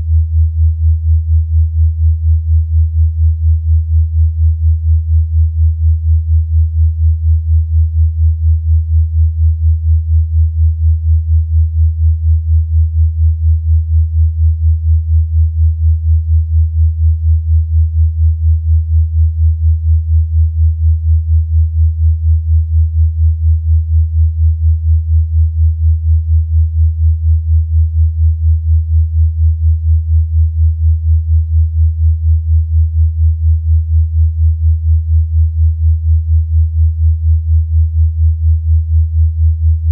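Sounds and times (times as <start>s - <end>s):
low pulsing sine tone: 0.0s - 39.9s.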